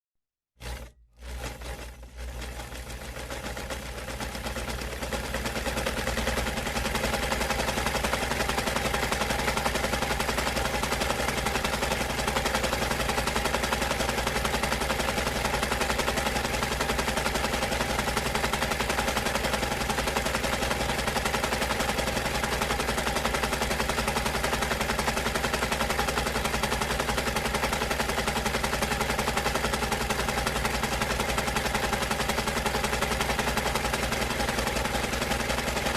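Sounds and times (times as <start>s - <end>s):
sewing machine stitching: 0.6s - 35.9s.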